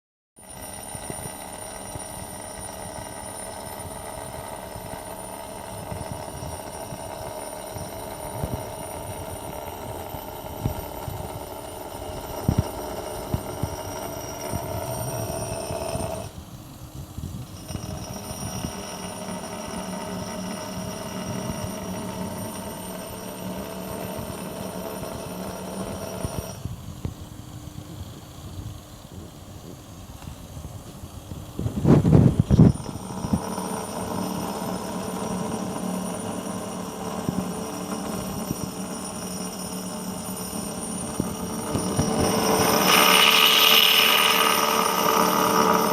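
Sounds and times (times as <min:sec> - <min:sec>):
milling cutter whine: 0:00.4 - 0:45.9.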